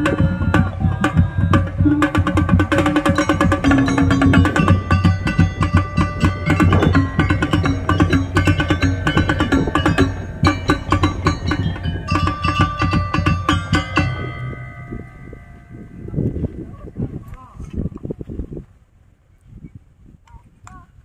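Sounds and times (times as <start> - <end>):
rapid drum strokes: 0.0 - 15.3
melody on pitched instruments: 1.8 - 16.5.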